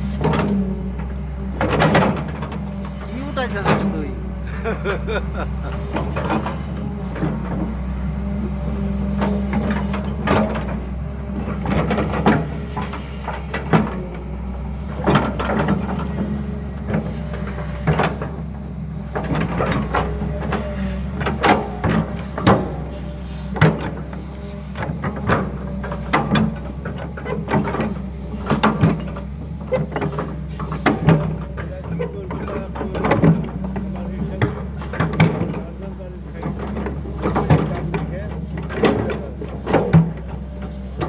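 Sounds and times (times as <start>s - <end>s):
excavator diesel engine running: 0.0s - 41.0s
clanks and knocks: 24.8s - 41.0s.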